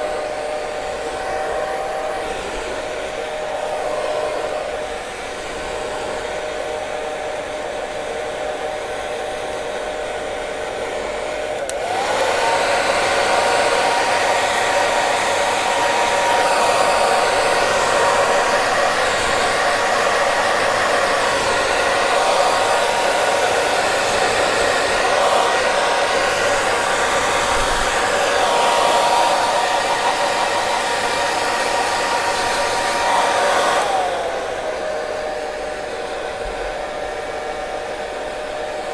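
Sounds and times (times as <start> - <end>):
hair dryer running: 0.0 - 38.9.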